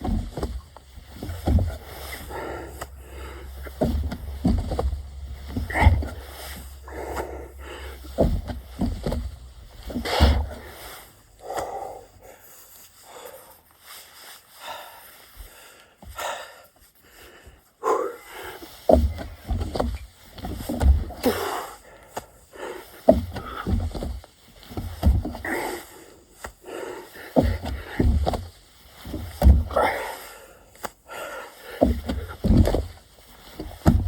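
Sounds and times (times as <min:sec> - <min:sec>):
dull thuds of landing: 0:00.0 - 0:11.8, 0:18.8 - 0:22.2, 0:23.0 - 0:25.8, 0:27.3 - 0:30.1, 0:31.7 - 0:34.0
person breathing heavily: 0:01.0 - 0:19.8, 0:20.6 - 0:24.4, 0:25.0 - 0:28.6, 0:29.2 - 0:33.0.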